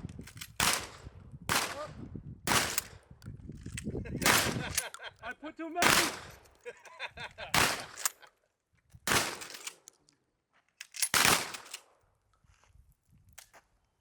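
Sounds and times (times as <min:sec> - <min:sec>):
shotgun blasts with echo: 0:00.6 - 0:03.1, 0:04.2 - 0:04.8, 0:05.8 - 0:06.4, 0:07.5 - 0:08.1, 0:09.1 - 0:09.6, 0:11.1 - 0:11.8.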